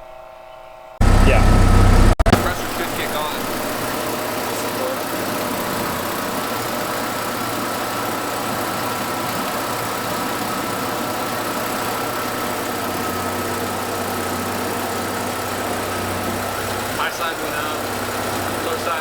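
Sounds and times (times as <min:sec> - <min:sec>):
compressor whine: 0:00.0 - 0:19.0
low hum: 0:01.0 - 0:09.0
car engine idling: 0:01.0 - 0:19.0.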